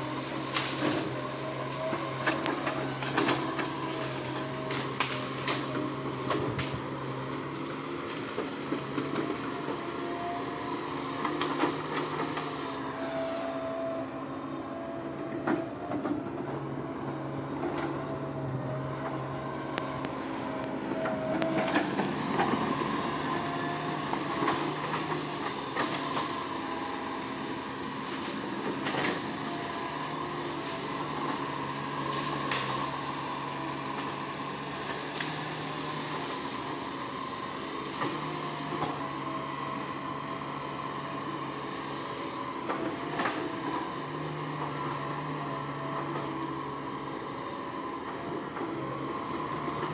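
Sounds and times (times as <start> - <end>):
diesel engine running under load: 0.0 - 49.9.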